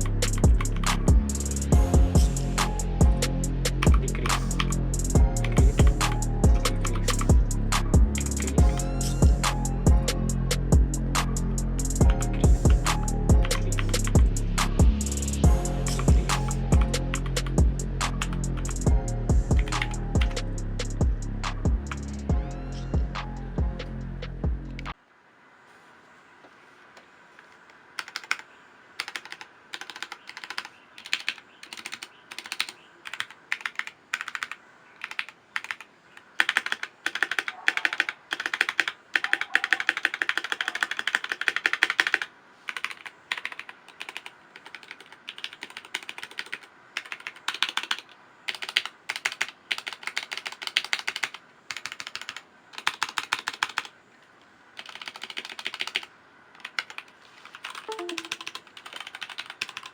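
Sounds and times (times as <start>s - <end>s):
mechanical keyboard typing: 0.0s - 1.5s, 3.8s - 8.8s, 11.9s - 14.3s, 15.8s - 18.9s, 19.6s - 20.4s, 21.9s - 22.2s, 28.0s - 53.9s, 54.8s - 59.9s.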